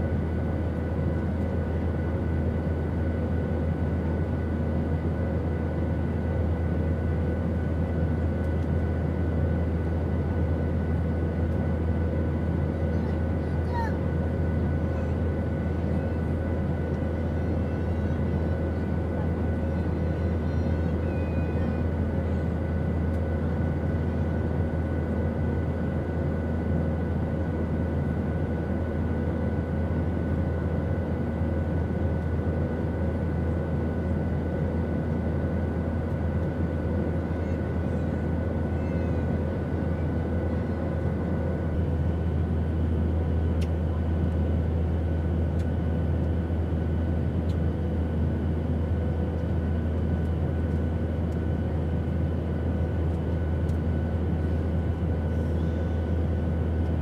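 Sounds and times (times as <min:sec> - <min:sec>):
airplane cabin drone: 0:00.0 - 0:57.0.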